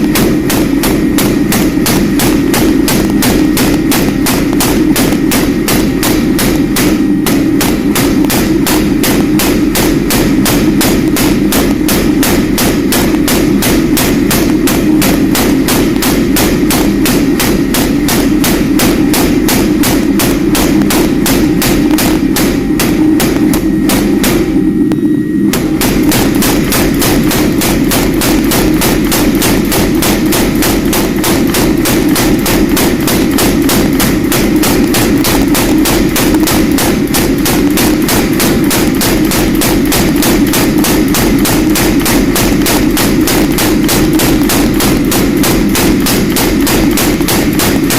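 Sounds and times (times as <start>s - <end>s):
steady low hum: 0.0s - 47.9s.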